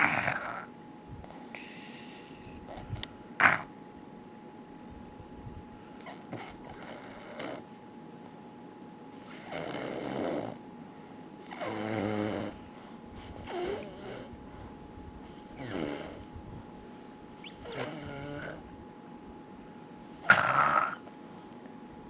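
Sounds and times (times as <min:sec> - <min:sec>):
snoring: 0:00.0 - 0:00.7, 0:01.3 - 0:02.8, 0:03.4 - 0:03.7, 0:06.0 - 0:07.8, 0:09.2 - 0:10.6, 0:11.4 - 0:12.6, 0:13.2 - 0:14.4, 0:15.3 - 0:16.3, 0:17.4 - 0:18.7, 0:20.1 - 0:21.1.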